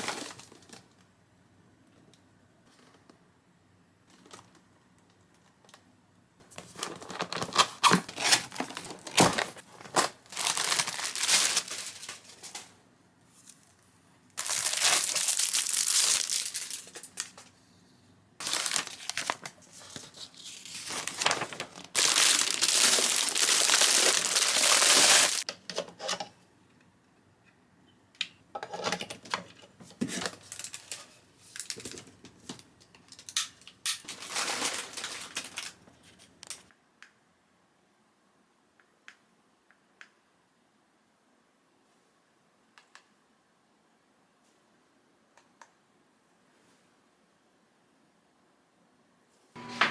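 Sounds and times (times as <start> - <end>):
packaging crinkling and tearing: 6.6 - 12.7, 14.4 - 17.4, 18.4 - 25.5, 33.2 - 35.8.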